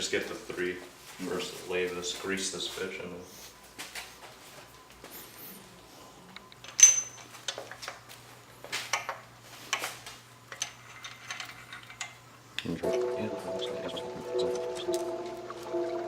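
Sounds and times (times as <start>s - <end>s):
metal engine parts clinking: 6.6s - 7.3s
background music: 12.8s - 16.0s.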